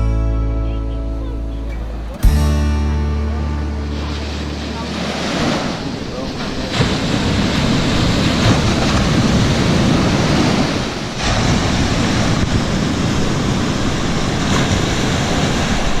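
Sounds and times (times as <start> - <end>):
ocean surf rushing: 1.4 - 16.0
wind buffeting microphone: 4.1 - 16.0.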